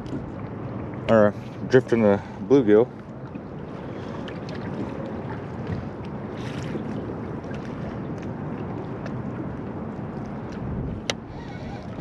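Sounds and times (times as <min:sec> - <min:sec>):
water lapping against boat: 0:00.0 - 0:12.0
wind on microphone: 0:03.6 - 0:12.0.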